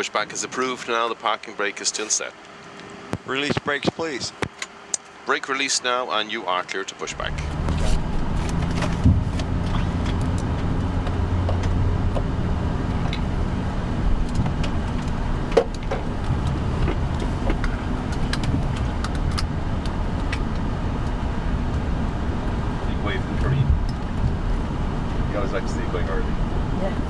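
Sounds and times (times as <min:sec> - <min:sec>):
aircraft cockpit low drone: 0:02.8 - 0:27.0.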